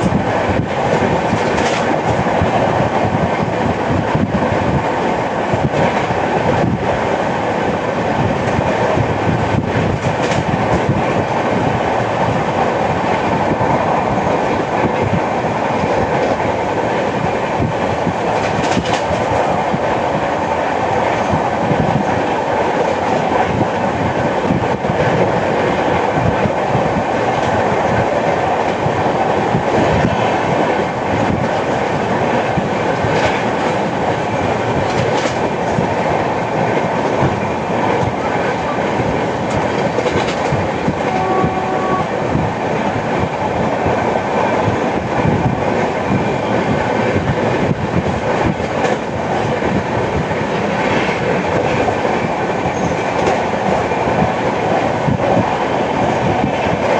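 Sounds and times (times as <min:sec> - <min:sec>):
train wheels rumbling on rail: 0:00.0 - 0:56.9
wheels clicking over rail joints: 0:00.8 - 0:02.5, 0:15.8 - 0:20.0, 0:28.2 - 0:41.4.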